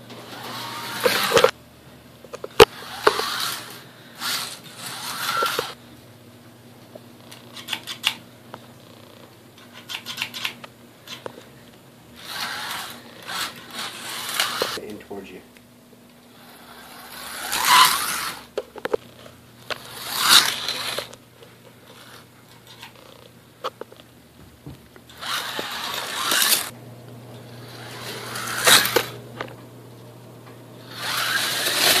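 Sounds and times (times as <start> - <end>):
steady low hum: 0.0 - 32.0
slot cars whirring: 0.2 - 1.5, 2.7 - 5.8, 12.2 - 14.8, 16.3 - 18.6, 19.6 - 21.2, 25.1 - 26.8, 27.4 - 29.5, 30.8 - 32.0.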